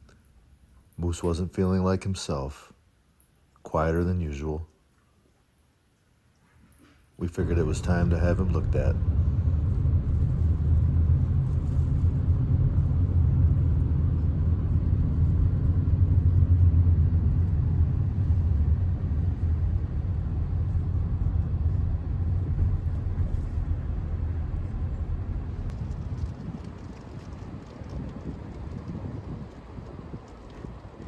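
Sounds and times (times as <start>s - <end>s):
car engine and road noise: 7.4s - 31.0s.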